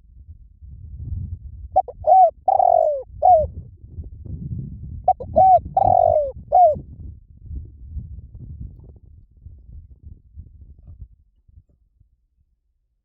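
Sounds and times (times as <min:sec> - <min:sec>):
dove cooing: 0:01.8 - 0:03.5, 0:05.1 - 0:06.8.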